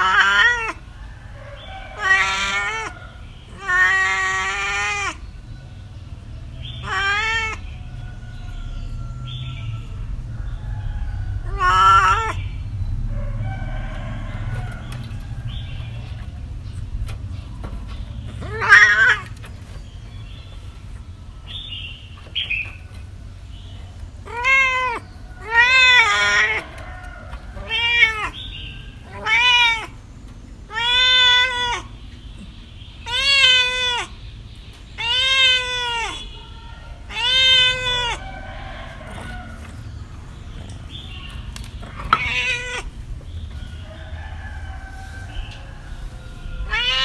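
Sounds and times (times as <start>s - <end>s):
cat meowing: 0.0s - 0.8s, 1.9s - 5.2s, 6.8s - 7.7s, 11.4s - 12.4s, 18.4s - 19.4s, 24.2s - 30.0s, 30.6s - 32.0s, 33.0s - 34.2s, 34.9s - 38.2s, 40.9s - 43.2s, 46.6s - 47.0s.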